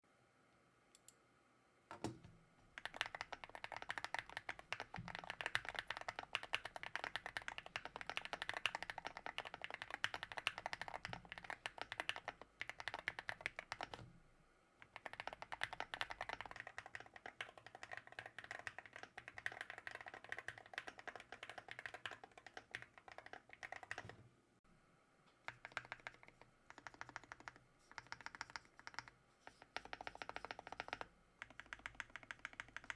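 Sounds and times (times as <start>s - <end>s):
typing on a mechanical keyboard: 2.8s - 14.0s, 14.8s - 24.2s, 25.4s - 32.9s.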